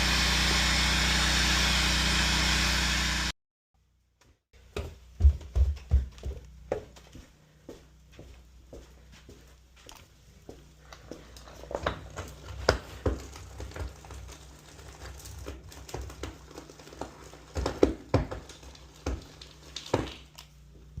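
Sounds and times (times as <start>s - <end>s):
steady low hum: 4.6s - 13.3s.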